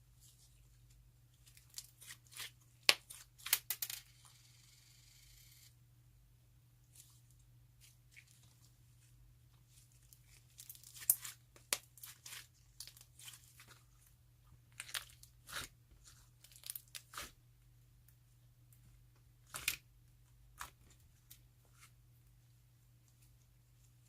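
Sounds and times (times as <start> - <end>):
candy crunching in slime: 9.8 - 14.1, 14.7 - 17.4.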